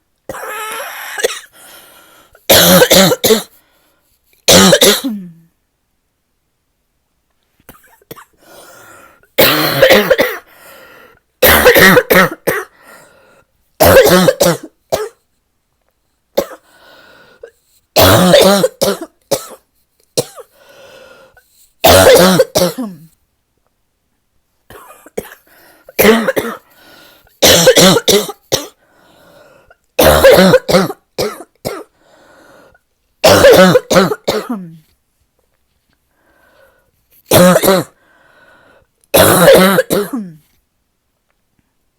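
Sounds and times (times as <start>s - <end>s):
person coughing deeply: 0.3s - 1.6s, 2.5s - 3.6s, 4.5s - 5.5s, 9.4s - 10.5s, 11.4s - 12.8s, 13.8s - 15.2s, 16.4s - 16.7s, 18.0s - 20.6s, 21.8s - 23.2s, 24.7s - 26.7s, 27.4s - 28.8s, 30.0s - 31.9s, 33.2s - 34.9s, 37.3s - 38.0s, 39.1s - 40.5s
faint breaths: 1.5s - 2.5s, 3.5s - 4.4s, 8.4s - 9.4s, 10.5s - 11.3s, 12.7s - 13.6s, 16.6s - 17.9s, 20.5s - 21.8s, 25.4s - 26.0s, 26.6s - 27.4s, 28.8s - 29.8s, 31.9s - 32.9s, 35.9s - 37.3s, 38.0s - 39.0s.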